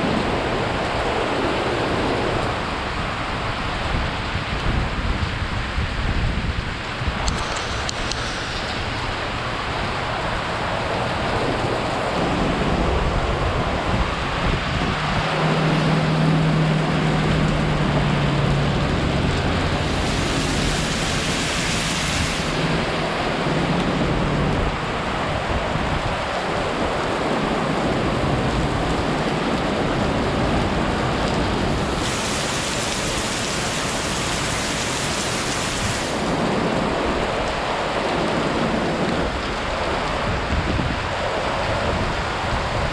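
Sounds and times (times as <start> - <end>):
heavy rain and wind: 0.0 - 42.9.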